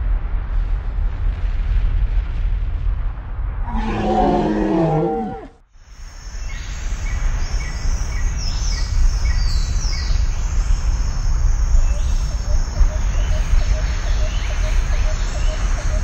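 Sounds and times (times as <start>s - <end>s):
wind rumbling on microphone: 0.0s - 16.0s
long descending voice-like call: 3.7s - 5.6s
insects chirping: 5.9s - 16.0s.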